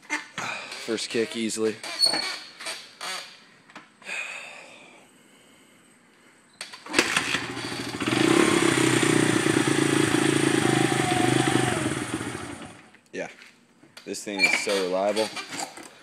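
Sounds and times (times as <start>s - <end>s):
dirt bike engine starting and running: 6.7s - 12.9s, 14.8s - 16.0s.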